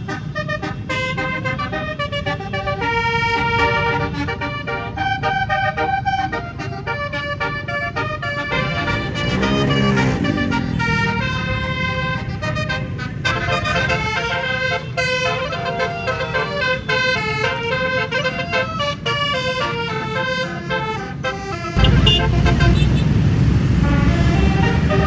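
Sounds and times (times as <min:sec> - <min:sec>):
musical air horn melody: 0:00.0 - 0:23.2, 0:23.8 - 0:25.0
bus engine rumble: 0:00.0 - 0:25.0.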